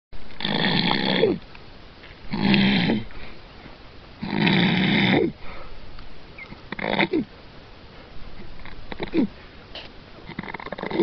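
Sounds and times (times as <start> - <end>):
man snoring: 2.3 - 3.0.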